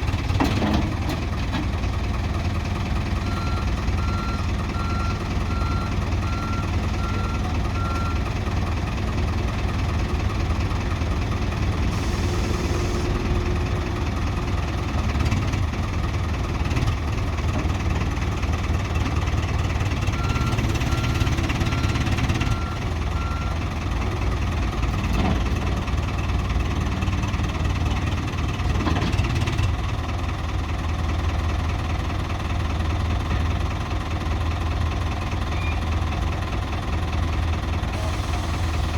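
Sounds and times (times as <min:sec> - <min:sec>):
backhoe diesel engine running: 0:00.0 - 0:38.9
reversing alarm beeping: 0:03.2 - 0:08.2, 0:20.2 - 0:23.6.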